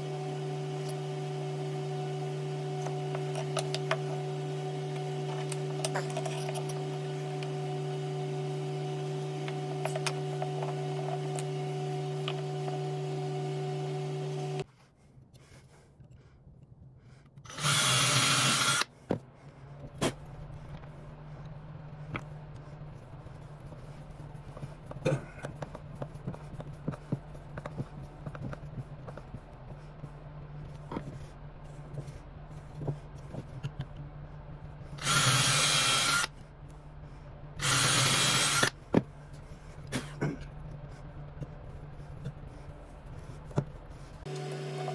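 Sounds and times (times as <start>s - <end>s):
power drill running: 0.0s - 14.6s, 17.5s - 18.9s, 35.0s - 36.4s, 37.6s - 38.8s
steady motor hum: 0.0s - 14.7s, 17.5s - 44.9s.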